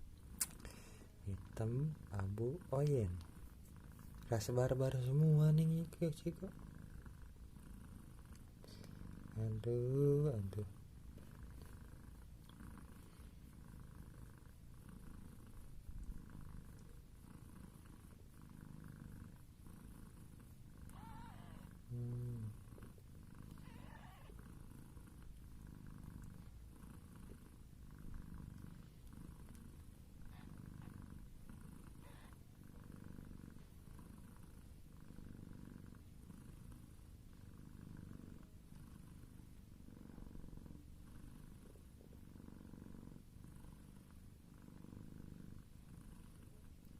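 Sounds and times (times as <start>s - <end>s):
cat purring: 0.0s - 46.9s
kitten mews: 20.9s - 21.7s, 23.6s - 24.4s.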